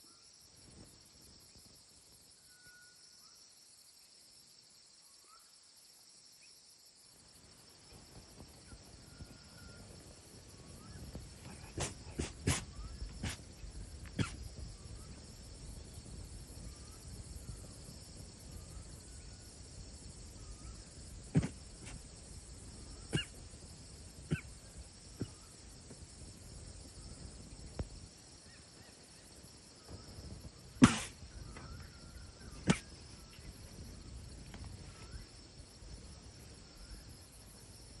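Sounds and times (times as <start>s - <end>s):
deer coughing: 14.2s - 14.4s, 23.1s - 23.4s, 24.3s - 24.5s, 32.7s - 32.9s.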